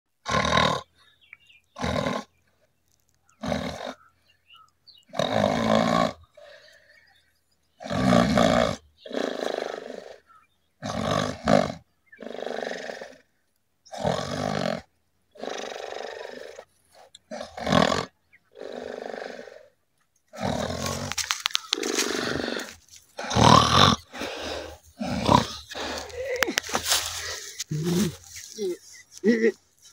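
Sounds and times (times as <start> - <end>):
person snoring: 21.8 - 28.2.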